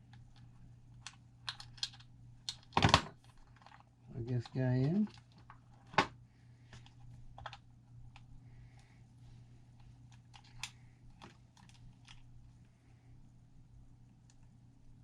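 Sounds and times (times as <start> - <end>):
steady low hum: 0.0 - 15.0
plastic connectors clicking: 1.0 - 2.9.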